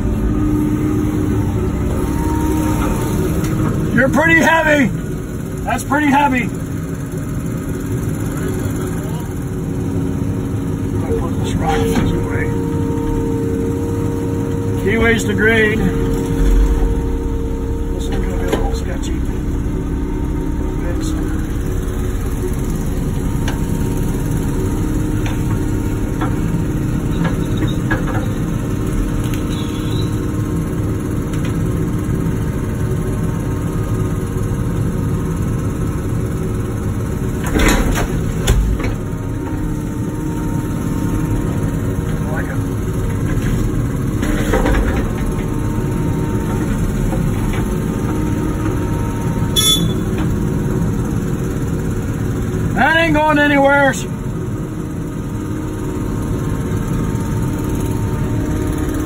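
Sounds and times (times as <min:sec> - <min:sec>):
excavator diesel engine running: 0:00.0 - 0:59.0
sharp high-pitched clank: 0:49.6 - 0:50.1.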